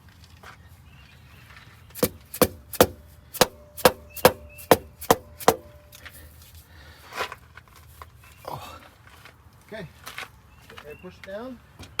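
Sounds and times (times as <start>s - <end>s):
sharp ringing metal taps: 2.0s - 5.8s.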